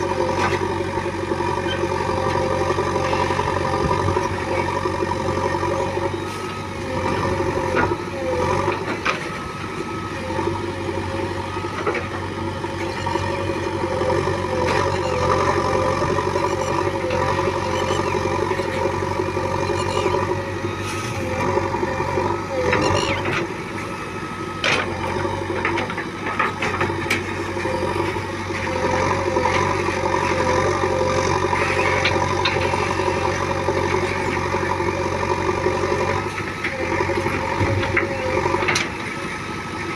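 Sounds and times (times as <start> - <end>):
diesel engines running: 0.0 - 39.9.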